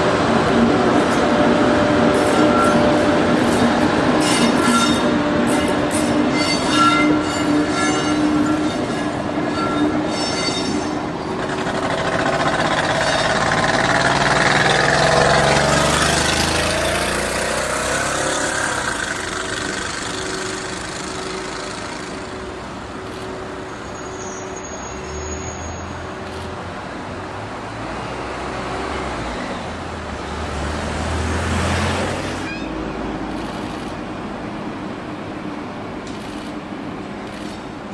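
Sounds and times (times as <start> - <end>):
crossing warning bell ringing: 0.0 - 30.0
cars and trucks driving past: 0.0 - 37.8.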